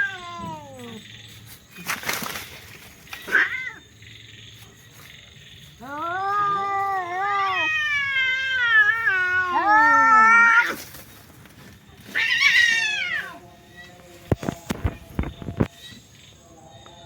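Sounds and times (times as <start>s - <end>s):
cats yowling: 0.0s - 1.0s, 3.2s - 3.8s, 5.8s - 10.9s, 12.0s - 13.4s.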